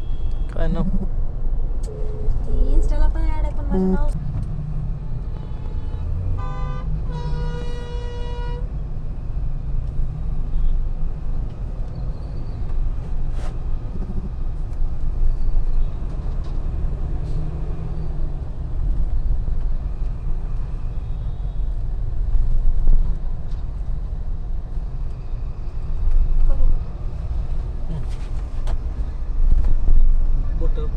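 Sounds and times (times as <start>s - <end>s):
engine and road noise: 0.0s - 30.9s
car horn honking: 5.4s - 8.6s.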